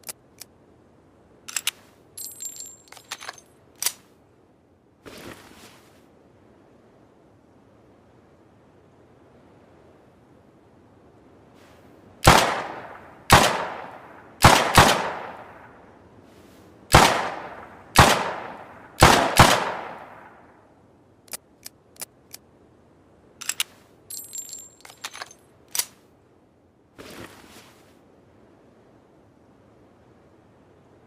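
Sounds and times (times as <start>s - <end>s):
light clicks: 0.0s - 0.6s, 1.5s - 4.1s, 23.4s - 26.0s
metallic clicking and jingling: 1.5s - 4.0s, 23.4s - 25.9s.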